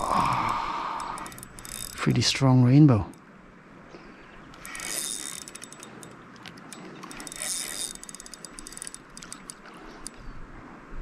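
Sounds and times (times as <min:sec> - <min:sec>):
fishing reel clicking: 0:00.0 - 0:02.5, 0:04.5 - 0:10.2.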